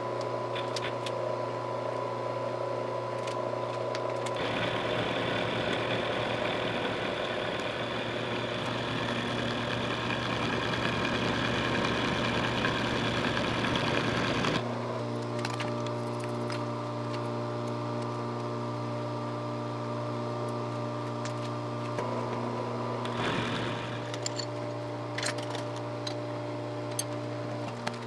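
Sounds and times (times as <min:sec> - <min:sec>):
milling machine humming: 0:04.2 - 0:15.1, 0:22.0 - 0:25.6
cutter cutting metal: 0:04.4 - 0:14.7, 0:23.0 - 0:24.4.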